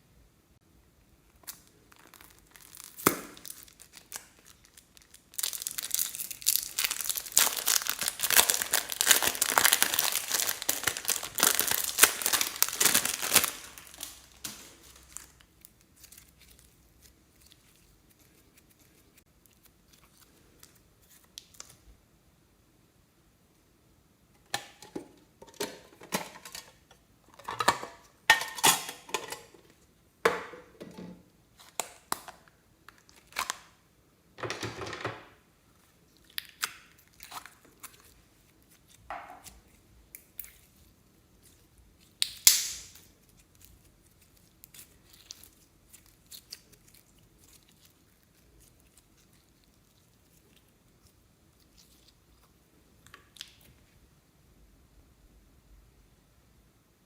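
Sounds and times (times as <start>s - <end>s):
slime squelching by hand: 35.8s - 53.8s.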